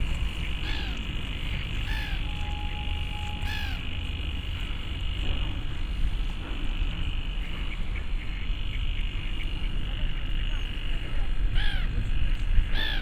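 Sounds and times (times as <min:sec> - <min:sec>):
short arched calls: 0:01.8 - 0:04.1
long held whistle: 0:01.9 - 0:04.0.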